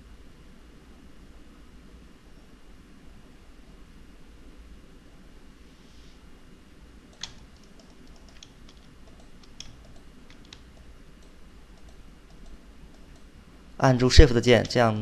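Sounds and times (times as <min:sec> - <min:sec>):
low room hum: 0:00.0 - 0:15.0
mouse and keyboard clicks: 0:07.1 - 0:13.3.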